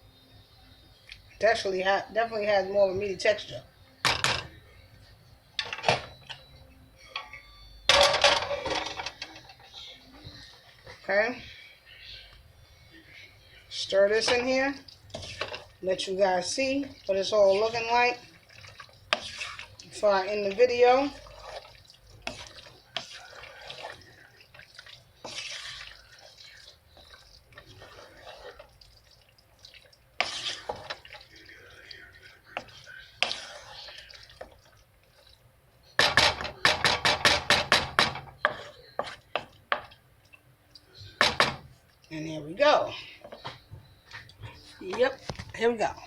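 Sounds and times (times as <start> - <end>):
spoon stirring wet food: 1.0 - 46.0
utensil scraping metal pan: 25.2 - 27.0, 30.2 - 31.0
spoon knocking against pot: 36.0 - 40.0, 41.2 - 41.7.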